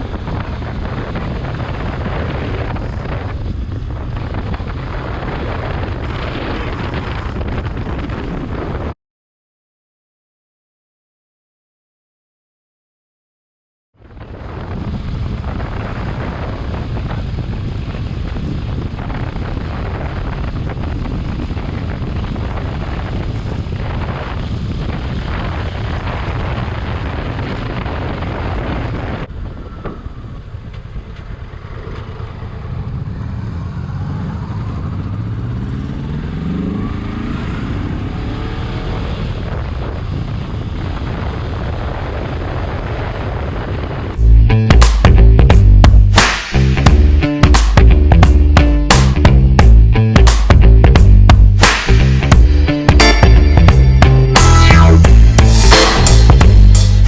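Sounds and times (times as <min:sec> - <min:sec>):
wind noise on microphone: 0:00.0 - 0:09.0, 0:14.0 - 0:57.0
motorcycle engine accelerating: 0:29.2 - 0:40.9, 0:44.2 - 0:57.0.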